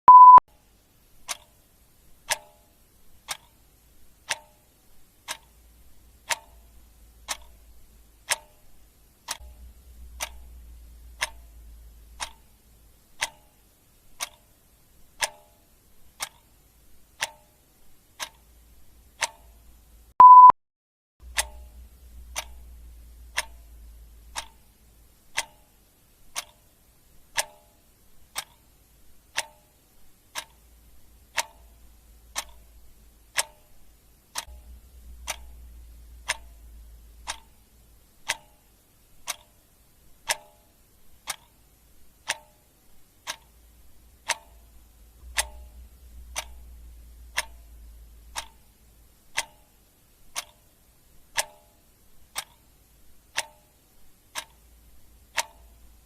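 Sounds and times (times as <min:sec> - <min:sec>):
short loud beep: 0:00.0 - 0:00.4, 0:20.2 - 0:20.6
clock ticking: 0:01.2 - 0:20.5, 0:21.2 - 0:56.0.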